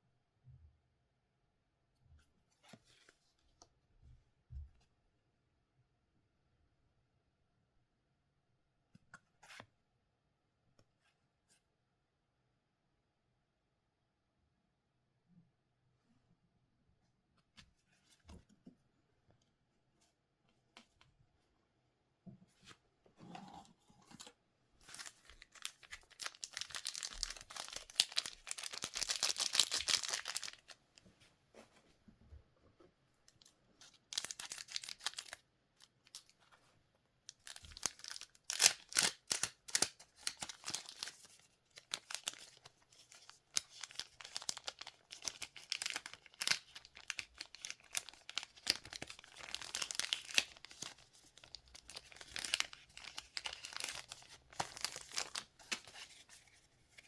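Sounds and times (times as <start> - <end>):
card packs tearing open: 24.8 - 30.6, 37.4 - 42.6, 43.2 - 56.2
wrappers crinkling: 24.8 - 30.8, 34.1 - 35.4, 37.4 - 57.0.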